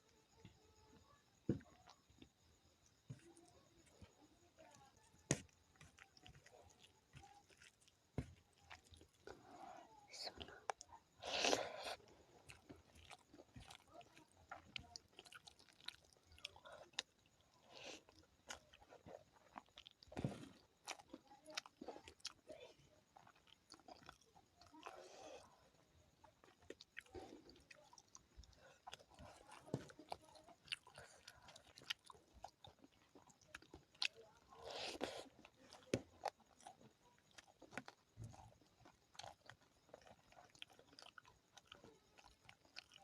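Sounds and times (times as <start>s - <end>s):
chewing with wet mouth clicks: 5.4s - 43.0s.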